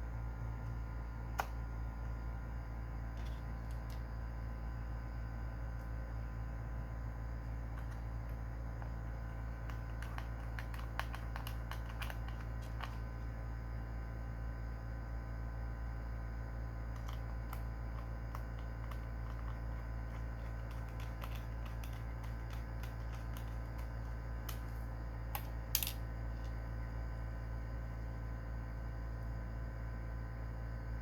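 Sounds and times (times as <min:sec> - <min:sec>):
steady low hum: 0:00.0 - 0:31.0
small parts and tools clicking: 0:03.2 - 0:04.0, 0:07.7 - 0:08.4, 0:09.6 - 0:13.1, 0:16.9 - 0:26.6.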